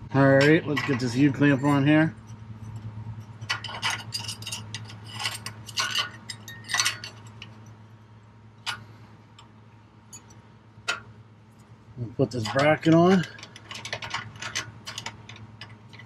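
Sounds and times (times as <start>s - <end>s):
metal clinks and taps: 0.4s - 7.8s, 10.1s - 11.7s.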